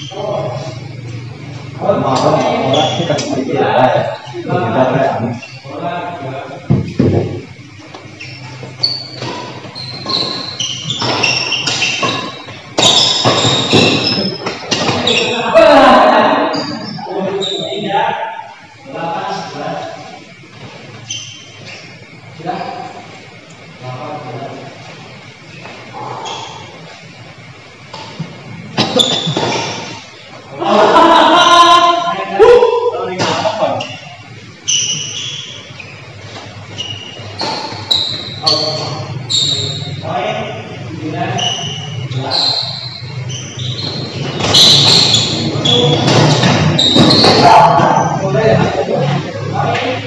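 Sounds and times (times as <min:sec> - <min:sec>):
shoes squeaking on court floor: 0:00.0 - 0:03.4, 0:05.3 - 0:05.8, 0:06.5 - 0:15.7, 0:16.3 - 0:17.9, 0:19.3 - 0:23.8, 0:24.6 - 0:30.4, 0:33.2 - 0:48.8
people shouting: 0:14.7 - 0:16.8.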